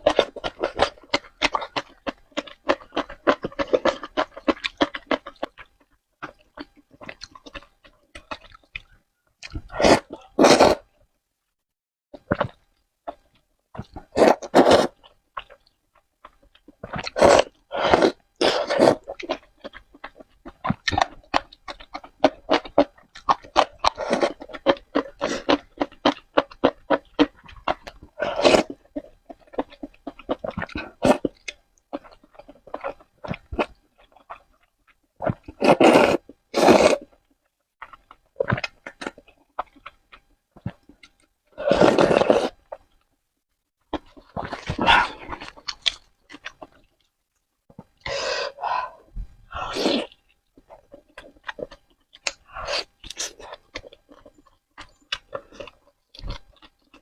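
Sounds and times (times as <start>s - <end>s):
wet chewing and mouth smacks: 0.0s - 10.3s, 14.9s - 17.6s, 19.0s - 35.6s, 37.0s - 41.4s, 43.9s - 48.1s, 50.0s - 57.0s
noodle slurps: 9.7s - 10.8s, 14.1s - 15.0s, 35.5s - 37.1s, 41.6s - 42.6s.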